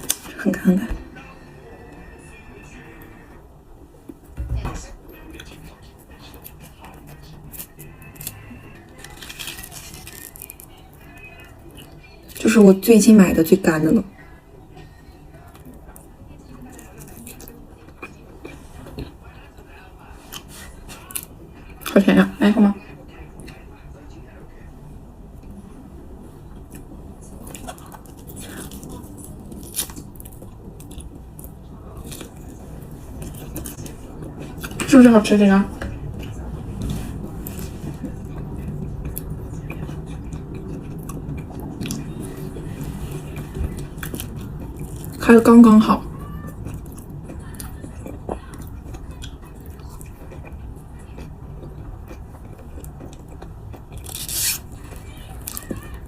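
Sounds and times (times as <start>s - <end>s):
person chewing: 5.4s - 12.4s, 15.4s - 21.9s, 26.7s - 34.9s, 35.9s - 45.2s, 46.2s - 55.9s.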